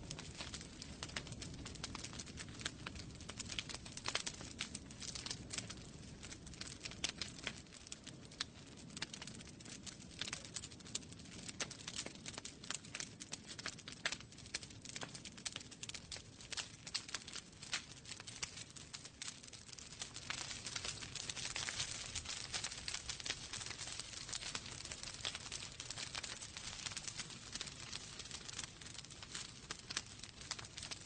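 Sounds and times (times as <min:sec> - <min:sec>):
fire crackling and popping: 0:00.0 - 0:31.0
low rumble of flames: 0:00.0 - 0:31.0.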